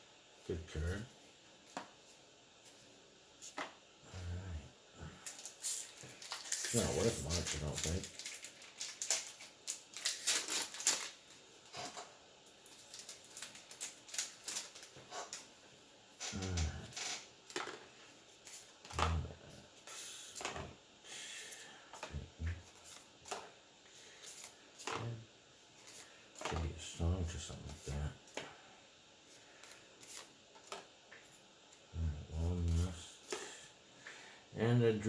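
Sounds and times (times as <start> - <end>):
trading cards clicking and rustling: 5.2 - 12.0, 12.6 - 15.5.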